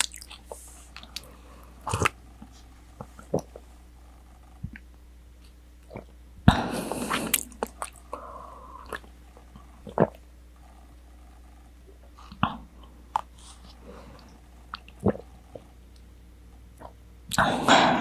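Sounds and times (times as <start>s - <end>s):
soft chewing: 0.0s - 6.2s
wet mouth clicks: 16.8s - 17.5s.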